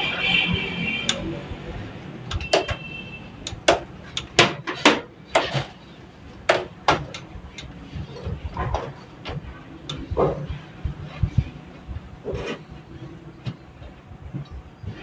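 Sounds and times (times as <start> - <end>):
metal hardware clicking on computer case: 2.3 - 5.7.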